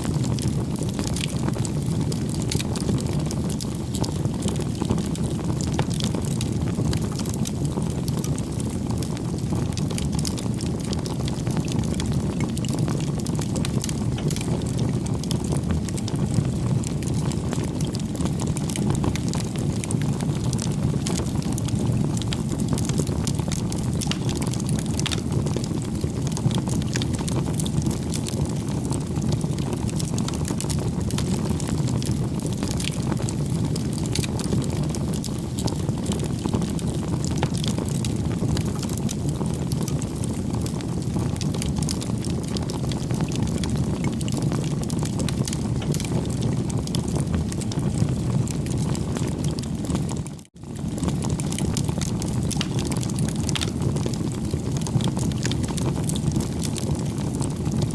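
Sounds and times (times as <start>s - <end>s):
wood fire crackling: 0.0s - 57.9s.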